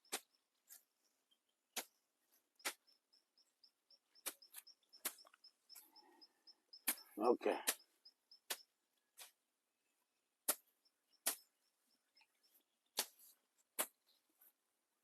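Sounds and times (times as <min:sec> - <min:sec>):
faint high bird chirps: 0:00.0 - 0:09.2, 0:10.7 - 0:13.4.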